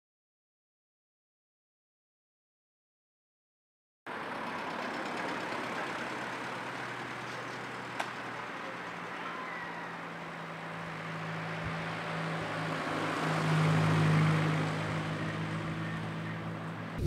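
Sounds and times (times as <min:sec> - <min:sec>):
road noise: 0:04.1 - 0:17.0
vehicle engine hum: 0:04.1 - 0:17.0.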